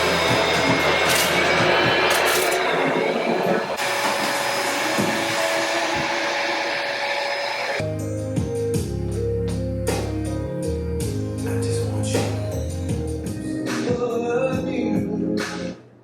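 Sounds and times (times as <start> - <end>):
vacuum cleaner running: 0.0 - 7.8
faint music: 7.8 - 16.0.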